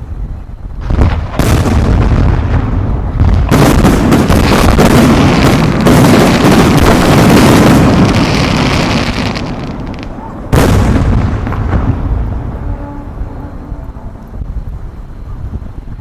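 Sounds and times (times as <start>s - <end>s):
fireworks crackling and booming: 0.0s - 13.3s
loud firework bang: 0.8s - 9.9s, 10.5s - 12.6s.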